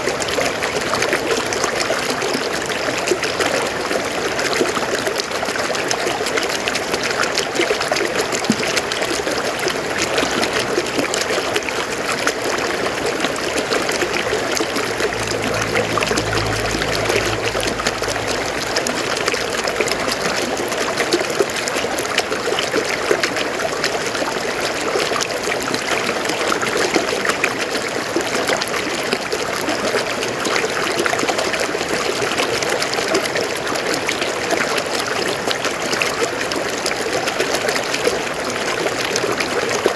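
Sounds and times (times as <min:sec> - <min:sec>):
river water flowing over rocks: 0:00.0 - 0:39.9
low rumble: 0:12.6 - 0:21.4.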